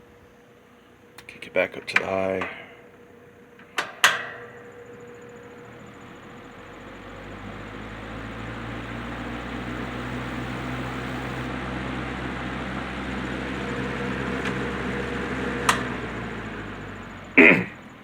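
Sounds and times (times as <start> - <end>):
box fan running: 0.0 - 18.0.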